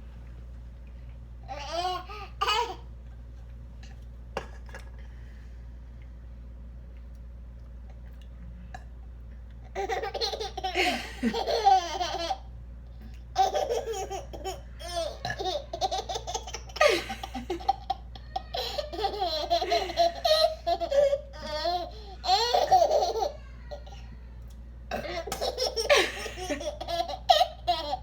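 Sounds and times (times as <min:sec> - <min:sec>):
baby laughing: 0:09.8 - 0:12.5, 0:13.4 - 0:24.0, 0:25.0 - 0:28.0.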